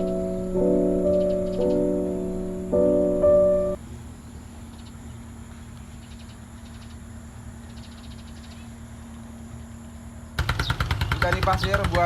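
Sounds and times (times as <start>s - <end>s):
faint steady hum: 0.0s - 5.8s.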